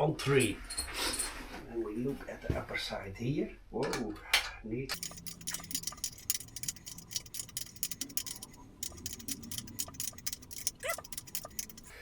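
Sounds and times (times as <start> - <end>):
metallic ticking of drive chain: 4.9 - 12.0.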